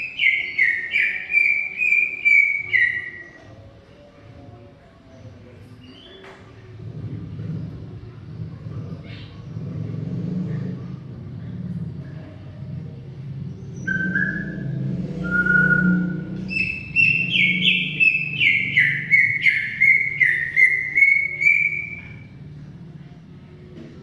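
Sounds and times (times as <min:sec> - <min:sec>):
low rumble: 0:06.7 - 0:17.0
bird singing slurred whistles: 0:13.8 - 0:22.3.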